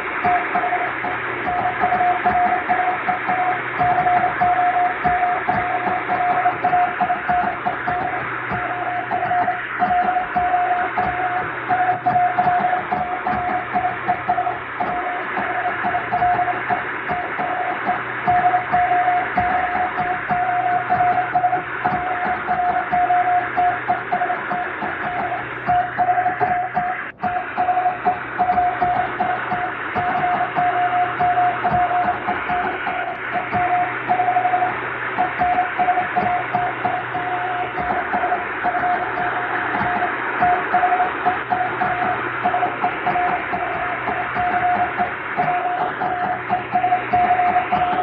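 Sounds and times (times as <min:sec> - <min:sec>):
radio static hiss: 0:00.0 - 0:48.0
morse code tone: 0:00.2 - 0:48.0.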